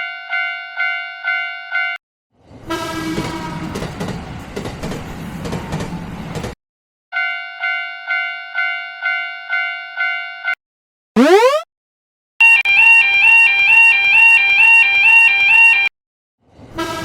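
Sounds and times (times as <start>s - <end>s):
train passing with wheel clatter: 2.4s - 6.6s
train horn: 2.7s - 3.9s, 16.8s - 17.0s.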